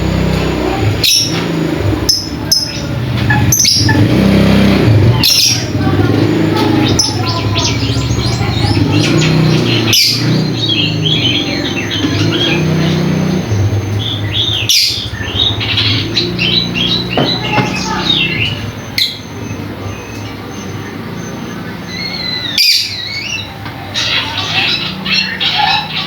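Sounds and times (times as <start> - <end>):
bird chirping: 0.0 - 26.0
sharp knocks: 17.0 - 18.0.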